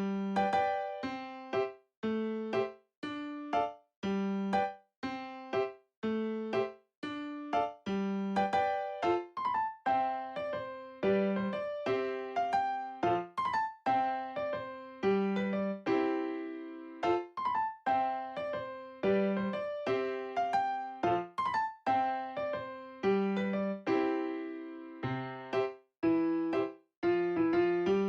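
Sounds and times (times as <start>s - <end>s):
bouncy electric piano melody: 0.0s - 28.0s.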